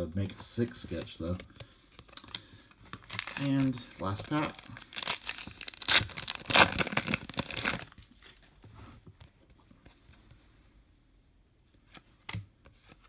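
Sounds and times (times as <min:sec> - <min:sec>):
wrapper and cards rustling: 0:00.4 - 0:08.6
card pack wrapper tearing: 0:02.1 - 0:08.1.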